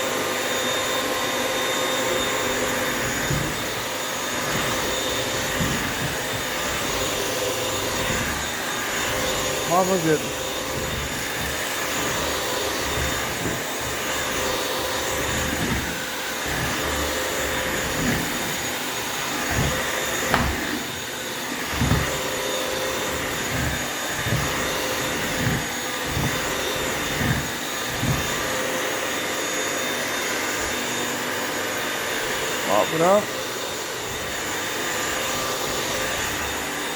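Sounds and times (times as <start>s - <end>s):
vacuum mop motor whining: 0.0s - 36.9s
dull knocks: 19.4s - 21.0s.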